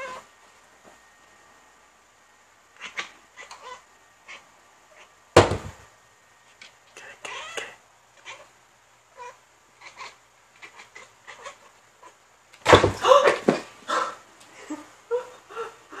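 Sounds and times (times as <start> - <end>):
cat chirping and chattering: 2.8 - 5.1, 7.2 - 8.5, 9.2 - 12.2.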